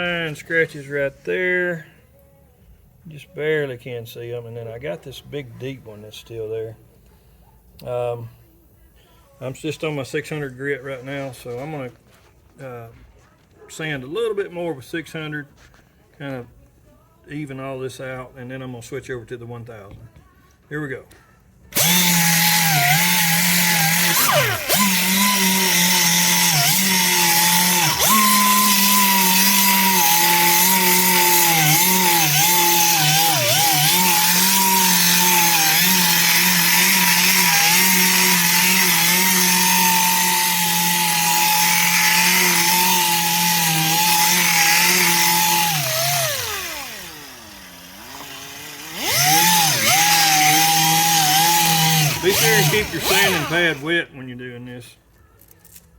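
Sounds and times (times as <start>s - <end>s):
power sander running: 21.8s - 53.9s.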